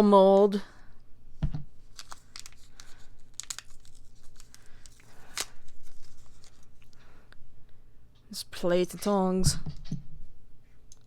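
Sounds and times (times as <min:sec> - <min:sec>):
plastic wrapping crinkling and tearing: 0:01.8 - 0:07.0.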